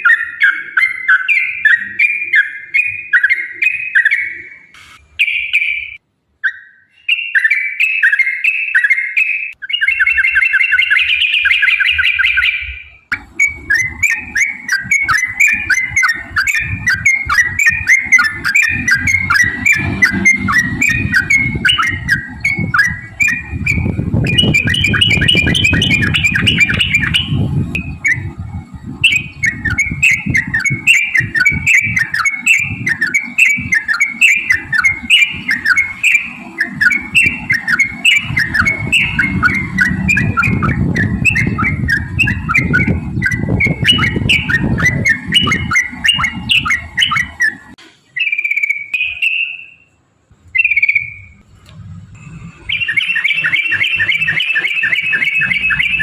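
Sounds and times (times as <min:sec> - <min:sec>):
bird singing chattering notes: 0:00.0 - 0:51.4, 0:52.2 - 0:56.0
low background rumble: 0:13.0 - 0:47.8, 0:50.2 - 0:56.0.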